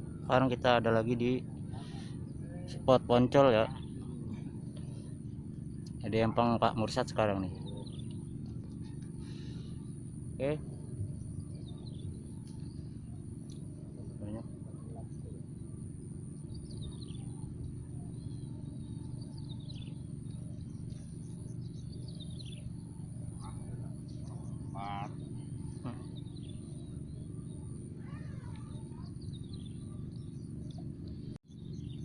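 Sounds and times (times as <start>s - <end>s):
low background rumble: 0.0s - 32.0s
birds calling: 0.2s - 32.0s.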